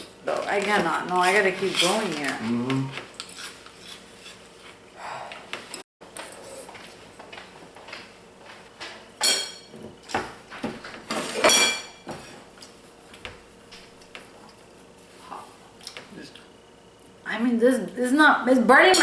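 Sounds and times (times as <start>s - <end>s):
utensils clinking on dishes: 1.1s - 2.4s, 9.2s - 9.8s, 11.1s - 12.4s.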